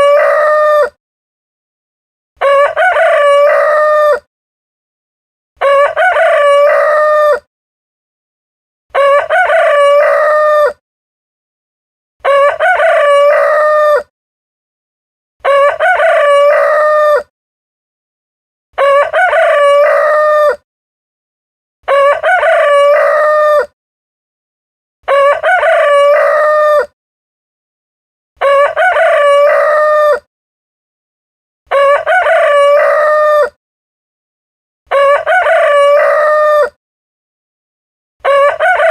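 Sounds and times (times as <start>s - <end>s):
rooster crowing: 0.0s - 1.0s, 2.4s - 4.3s, 5.6s - 7.5s, 9.0s - 10.8s, 12.2s - 14.1s, 15.4s - 17.3s, 18.8s - 20.6s, 21.9s - 23.7s, 25.1s - 26.9s, 28.4s - 30.3s, 31.7s - 33.6s, 34.9s - 36.8s, 38.2s - 38.9s.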